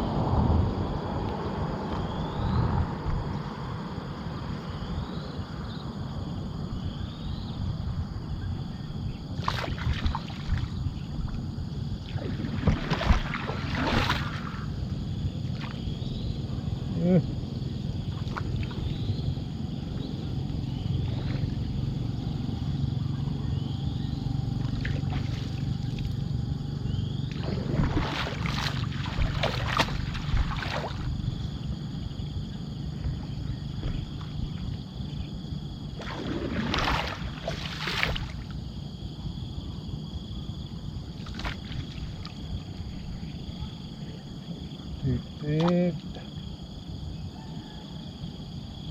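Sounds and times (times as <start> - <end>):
steady low hum: 0.0 - 47.3
high insect tone: 0.0 - 48.9
water splashing beside boat: 9.3 - 16.2, 18.0 - 19.1, 24.5 - 26.2, 27.2 - 31.6, 32.9 - 38.7, 41.0 - 46.3.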